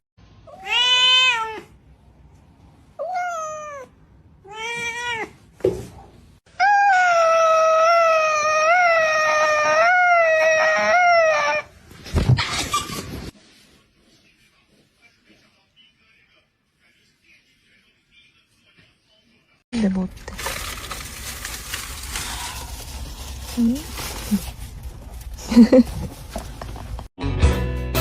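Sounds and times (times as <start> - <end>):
cat meowing: 0.5 - 1.7, 3.0 - 5.4
cat yowling: 0.5 - 1.7, 3.0 - 5.4, 6.5 - 11.7.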